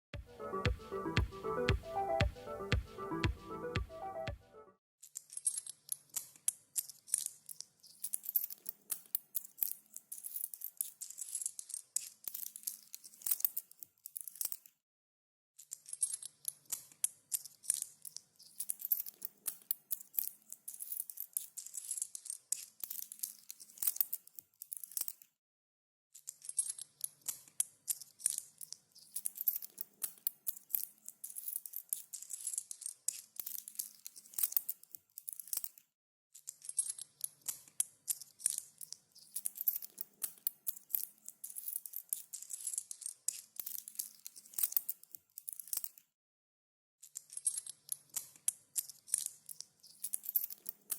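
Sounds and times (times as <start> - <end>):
coins jingling: 7.9 - 11.8, 18.4 - 25.2, 29.0 - 35.7, 39.2 - 45.9, 49.9 - 50.9.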